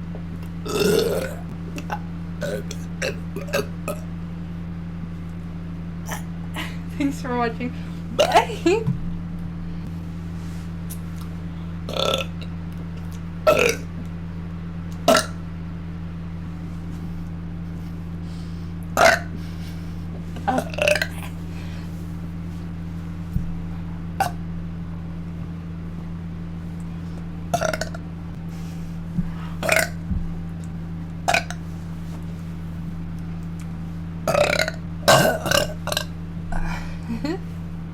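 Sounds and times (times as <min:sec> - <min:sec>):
steady low hum: 0:00.0 - 0:37.9
person burping: 0:00.6 - 0:04.0, 0:06.1 - 0:06.7, 0:08.2 - 0:08.5, 0:11.9 - 0:12.4, 0:13.5 - 0:13.9, 0:15.1 - 0:15.4, 0:19.0 - 0:19.3, 0:20.5 - 0:21.4, 0:27.5 - 0:28.0, 0:29.6 - 0:30.0, 0:34.3 - 0:36.9.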